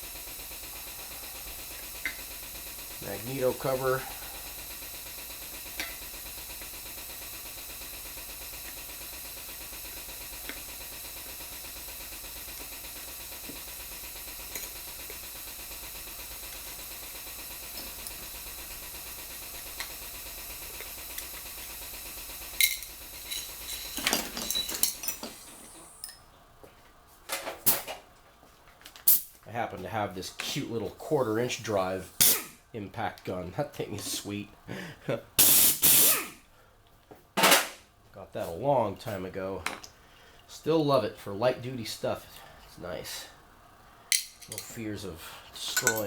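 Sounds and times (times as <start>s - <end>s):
metal tools clinking on workbench: 22.6s - 25.4s, 44.2s - 44.8s, 45.7s - 46.0s
background hiss: 34.2s - 36.4s.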